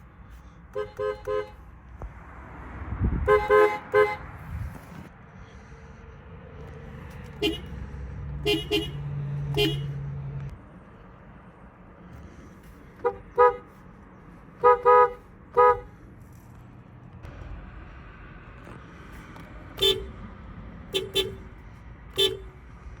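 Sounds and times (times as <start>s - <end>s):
car horn beeping: 0.7s - 1.6s, 3.2s - 4.4s, 7.3s - 7.8s, 8.4s - 10.2s, 13.0s - 13.7s, 14.6s - 15.9s, 19.8s - 20.2s, 20.9s - 21.5s, 22.1s - 22.6s.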